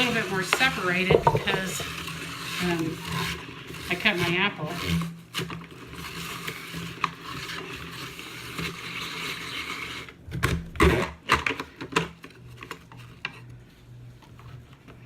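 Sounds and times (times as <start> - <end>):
sharp knocks and clatters: 1.1 - 1.8.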